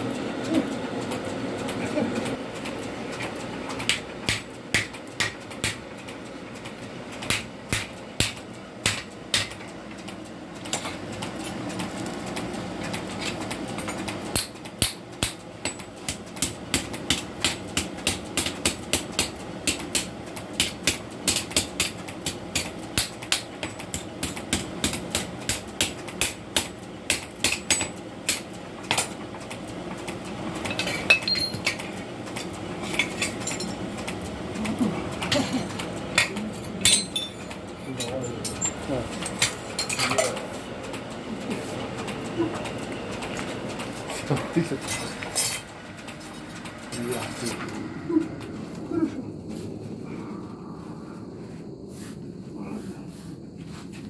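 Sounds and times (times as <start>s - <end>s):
hammer striking metal on anvil: 3.9s - 5.8s, 7.2s - 9.6s, 14.3s - 22.0s, 36.2s - 37.6s
low steady hum: 28.7s - 54.0s.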